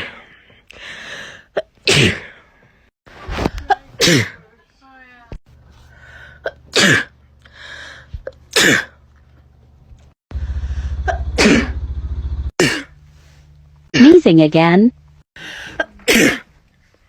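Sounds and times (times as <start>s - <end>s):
loud breath: 0.5s - 1.5s, 7.4s - 8.2s, 10.3s - 11.1s
person sneezing: 1.8s - 2.4s, 3.7s - 4.4s, 8.5s - 9.0s, 11.1s - 11.8s, 12.6s - 13.0s, 15.7s - 16.5s.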